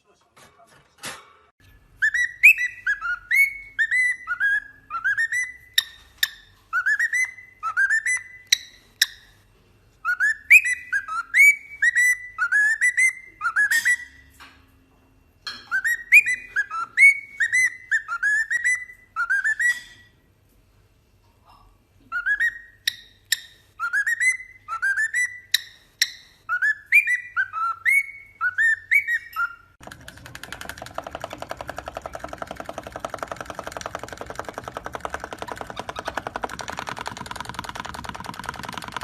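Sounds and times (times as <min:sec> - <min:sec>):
parrot whistling: 0:02.0 - 0:09.3, 0:10.0 - 0:14.3, 0:15.6 - 0:20.1, 0:22.1 - 0:29.8, 0:34.3 - 0:37.6.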